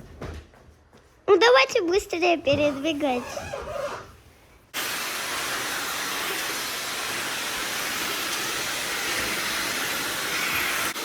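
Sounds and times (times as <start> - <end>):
steady hiss: 4.8 - 11.0.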